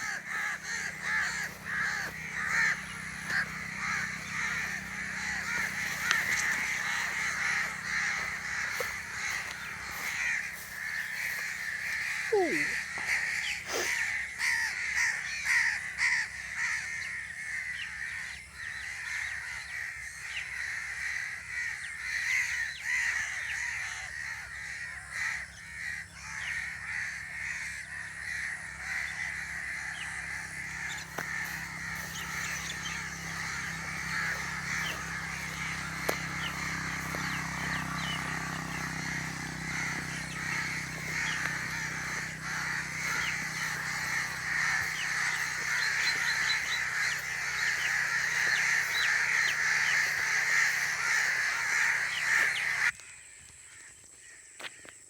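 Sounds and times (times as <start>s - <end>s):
low steady hum: 0.0s - 14.4s, 27.6s - 52.9s
birds calling: 0.0s - 55.0s.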